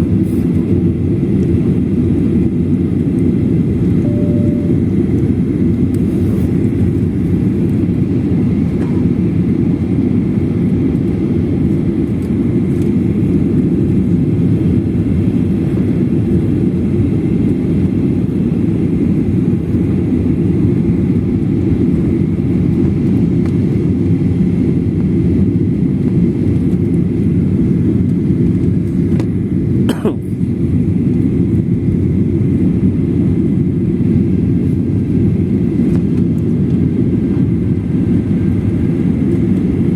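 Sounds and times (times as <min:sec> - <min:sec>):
aircraft cabin engine noise: 0:00.0 - 0:39.9.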